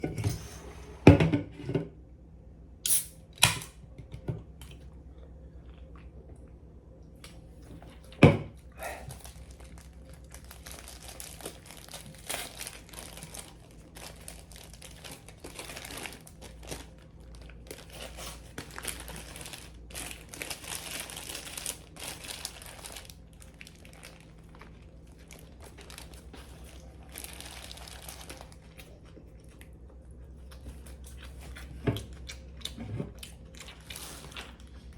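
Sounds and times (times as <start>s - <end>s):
paper wrappers rustling and tearing: 9.0s - 28.7s.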